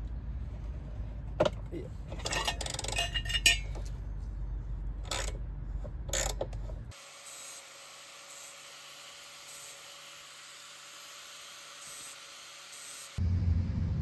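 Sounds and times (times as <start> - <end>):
small metal parts clinking: 2.0 - 4.0, 5.0 - 5.4, 6.1 - 6.8.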